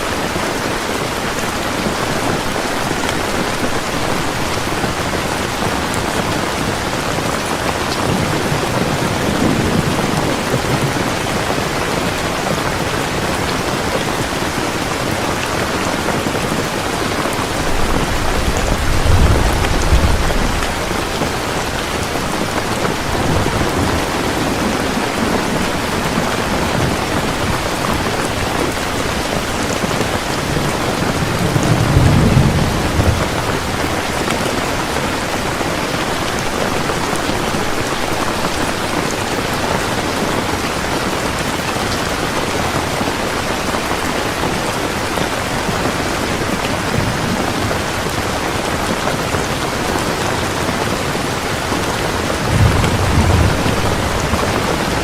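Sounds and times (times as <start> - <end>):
heavy rain falling: 0.0 - 55.0
thunder rumble: 17.3 - 33.8, 51.9 - 55.0.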